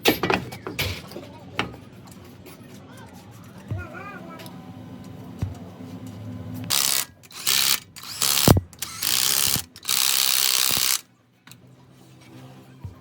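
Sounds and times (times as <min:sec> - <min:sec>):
wrench ratcheting: 0:06.7 - 0:11.0.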